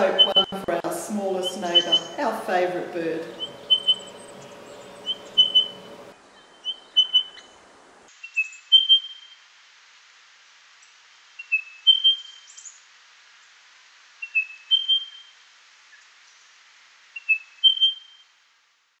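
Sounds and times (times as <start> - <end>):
bird whistled call: 0.2 - 0.5, 1.7 - 2.2, 3.3 - 7.5, 8.2 - 9.4, 11.4 - 12.7, 14.2 - 15.3, 17.2 - 18.3.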